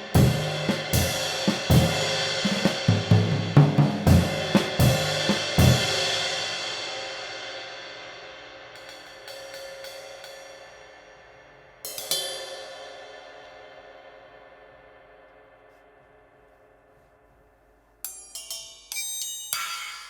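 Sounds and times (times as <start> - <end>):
drums: 0.0 - 15.0.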